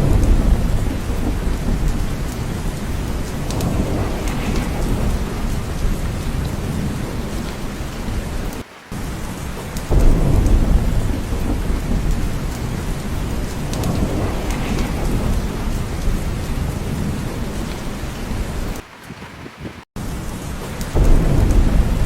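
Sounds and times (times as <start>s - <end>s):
rumbling thunder: 0.0s - 19.8s, 20.9s - 22.0s
heavy rain: 0.0s - 22.0s.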